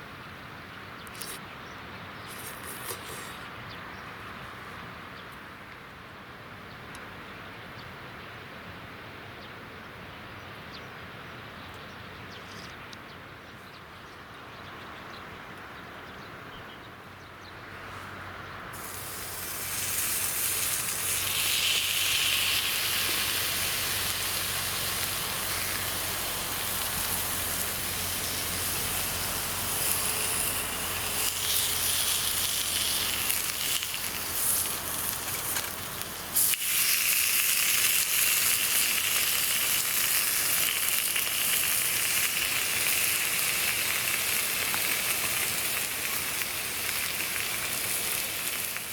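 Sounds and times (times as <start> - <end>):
beef sizzling over a campfire: 18.7 - 48.9.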